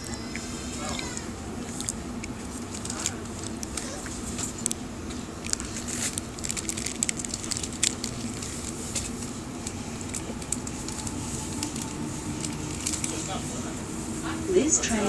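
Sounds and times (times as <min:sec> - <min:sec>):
train rumble and hum: 0:00.0 - 0:15.0
small crackling clicks: 0:01.6 - 0:13.3.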